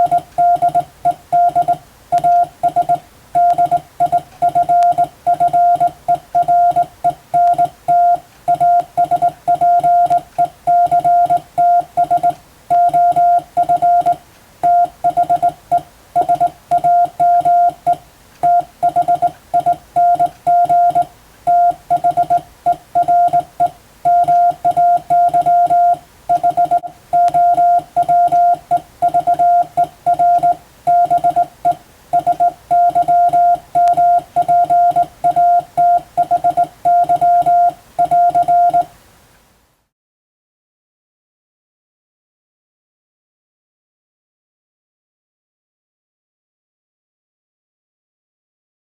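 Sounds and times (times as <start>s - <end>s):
morse code tone beeping: 0.0s - 38.9s.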